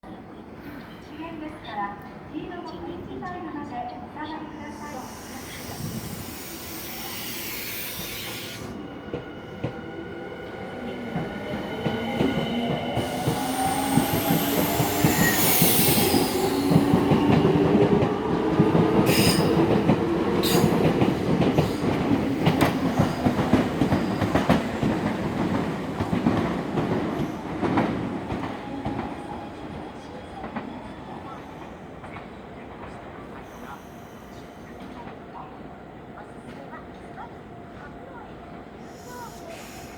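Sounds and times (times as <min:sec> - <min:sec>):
train wheels clacking on rail joints: 0:11.2 - 0:29.1.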